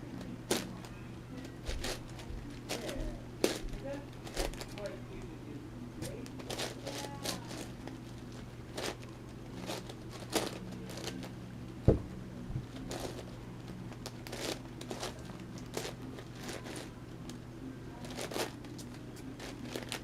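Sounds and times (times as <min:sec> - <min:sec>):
dull knock: 0:11.9 - 0:12.2.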